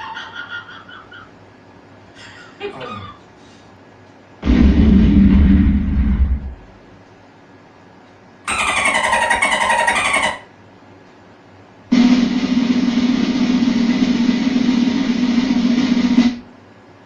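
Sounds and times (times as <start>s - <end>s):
engine-like droning hum: 4.4s - 7.0s, 11.9s - 16.5s.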